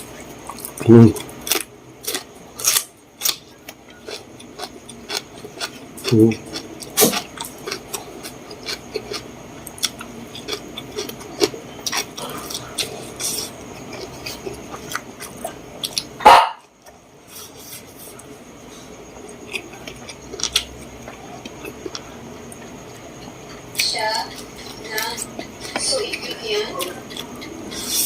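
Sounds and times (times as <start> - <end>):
chewing with wet clicks: 0.1 - 17.0, 19.0 - 28.0.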